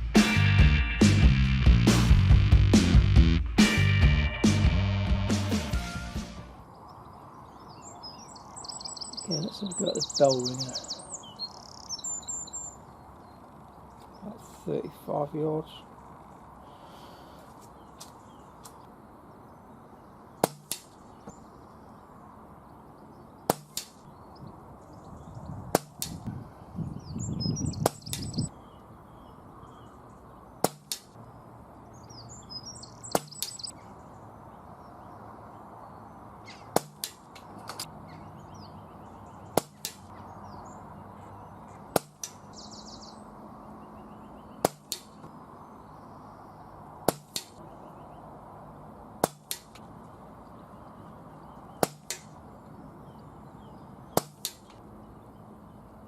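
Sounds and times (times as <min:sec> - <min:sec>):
birds chirping: 0:06.6 - 0:56.0
air rifle shots: 0:20.4 - 0:21.0, 0:23.5 - 0:24.0, 0:36.7 - 0:37.8, 0:47.0 - 0:47.6.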